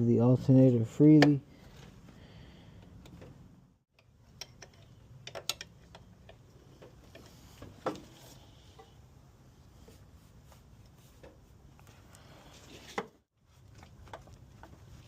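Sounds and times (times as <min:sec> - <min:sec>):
metallic clicks of hand tools: 0:04.0 - 0:06.4.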